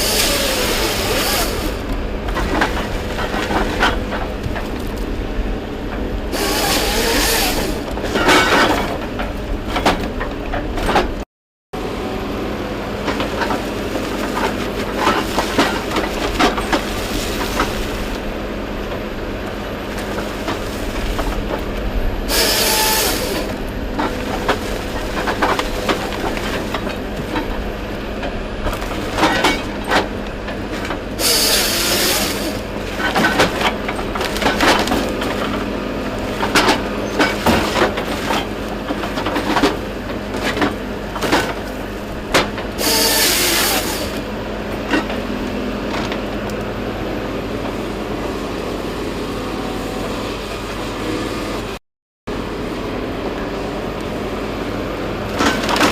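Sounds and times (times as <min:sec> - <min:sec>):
logging machine running: 0:00.0 - 0:11.1, 0:11.8 - 0:55.9
knocks of wood and metal: 0:06.4 - 0:11.2, 0:36.4 - 0:41.7.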